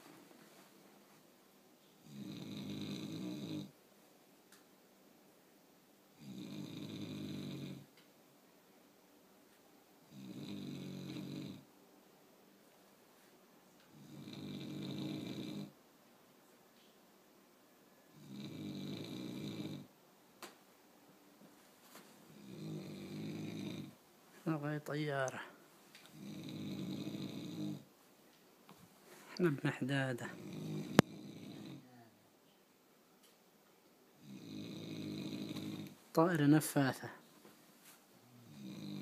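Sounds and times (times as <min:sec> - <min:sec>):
person snoring: 0:02.0 - 0:03.8, 0:06.2 - 0:07.9, 0:10.1 - 0:11.7, 0:13.9 - 0:15.8, 0:18.1 - 0:19.9, 0:22.3 - 0:24.0, 0:26.1 - 0:27.9, 0:30.2 - 0:32.0, 0:34.2 - 0:36.0, 0:38.4 - 0:39.0.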